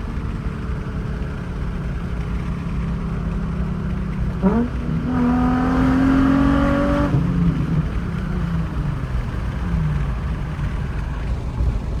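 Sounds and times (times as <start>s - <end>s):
car engine revving: 4.4s - 9.6s.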